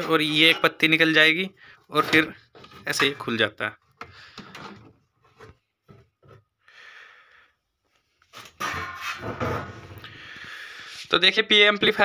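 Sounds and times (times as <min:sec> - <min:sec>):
metal cover scraping: 0:08.5 - 0:10.0.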